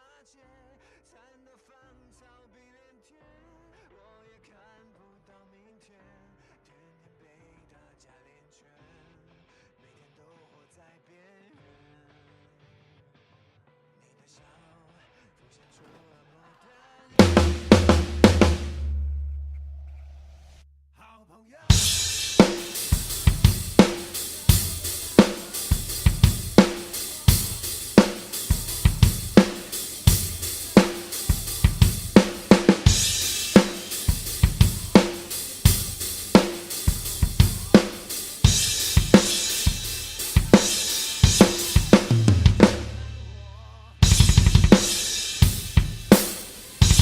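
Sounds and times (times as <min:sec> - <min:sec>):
rock drum kit playing: 0:17.2 - 0:19.8, 0:21.7 - 0:47.0
crash cymbals: 0:21.7 - 0:43.4, 0:44.0 - 0:47.0.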